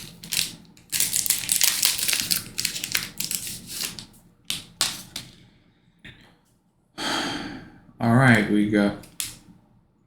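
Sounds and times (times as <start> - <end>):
wrapper crinkling and crackling: 0.0 - 5.2.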